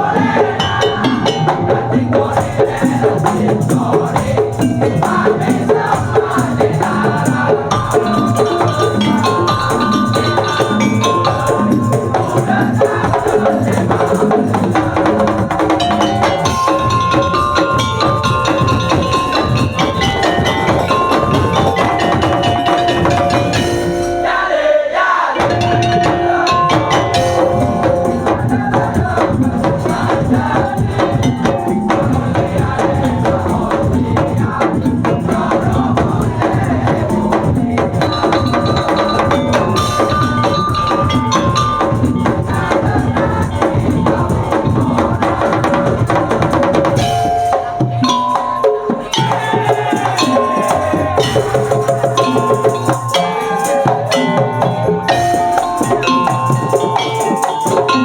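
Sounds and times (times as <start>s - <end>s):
wooden and bamboo slit drums: 0.0s - 24.5s, 25.4s - 58.0s
high melodic lines: 7.7s - 24.6s, 25.4s - 33.3s, 46.9s - 58.0s.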